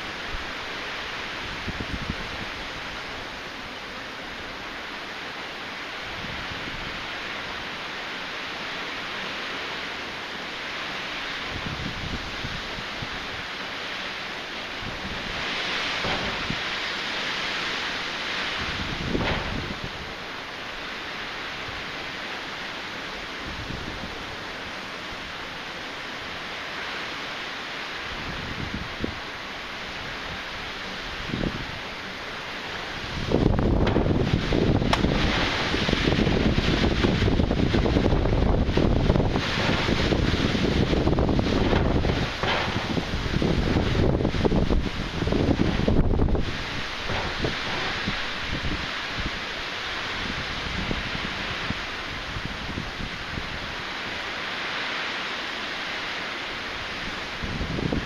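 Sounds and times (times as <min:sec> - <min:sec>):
wind buffeting microphone: 0:00.0 - 0:03.4, 0:11.2 - 0:13.5, 0:14.7 - 0:20.3, 0:28.0 - 0:54.6, 0:56.6 - 0:58.0
rain: 0:00.0 - 0:58.0
wind: 0:00.0 - 0:58.0
strong wind rushing: 0:18.3 - 0:20.2, 0:32.8 - 0:53.8, 0:56.8 - 0:58.0.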